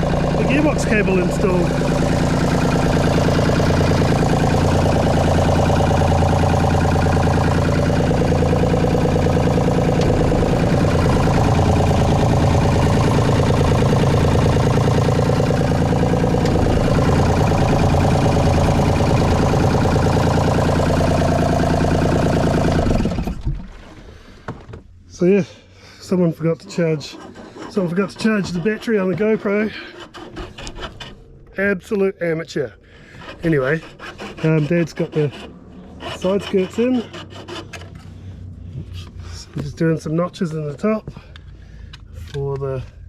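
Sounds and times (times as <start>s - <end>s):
diesel boat engine idling: 0.0s - 23.4s.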